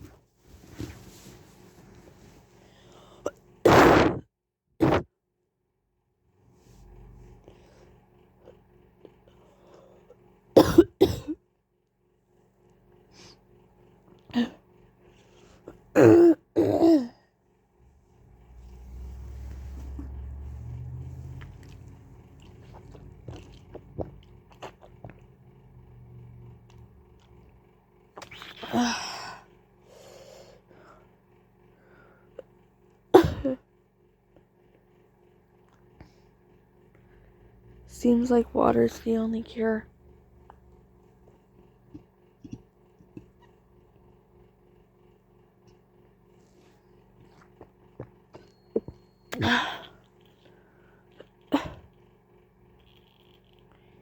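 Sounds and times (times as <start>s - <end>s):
faint breath: 2.6s - 3.2s
person coughing: 10.6s - 11.4s, 15.9s - 17.2s, 33.2s - 33.6s, 48.8s - 50.0s, 51.5s - 51.9s.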